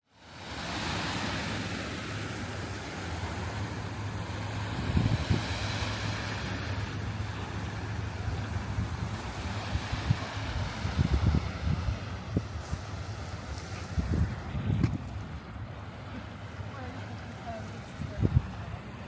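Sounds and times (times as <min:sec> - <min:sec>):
distant traffic rumble: 0:00.5 - 0:19.0
wind buffeting microphone: 0:03.2 - 0:16.0, 0:17.4 - 0:19.0.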